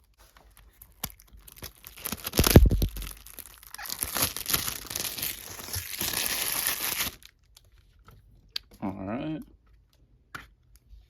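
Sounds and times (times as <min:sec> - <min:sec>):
plastic wrapping crinkling and tearing: 0:00.0 - 0:08.0.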